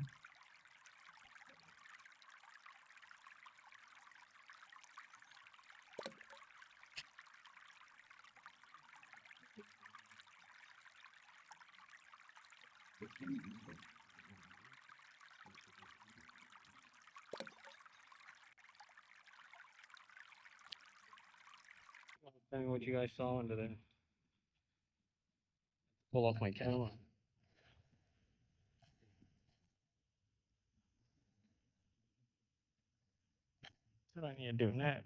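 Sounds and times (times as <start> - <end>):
trickle of flowing water: 0.0 - 22.2.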